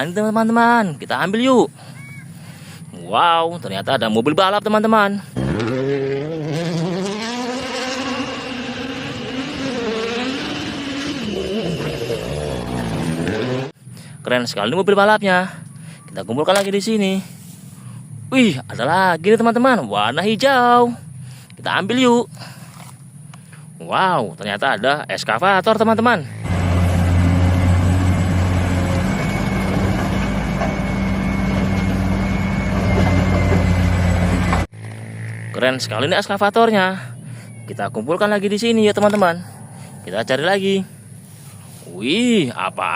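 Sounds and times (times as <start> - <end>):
engine-like buzzing drone: 5.2 - 13.8, 25.6 - 42.9
diesel excavator engine running: 26.2 - 35.5.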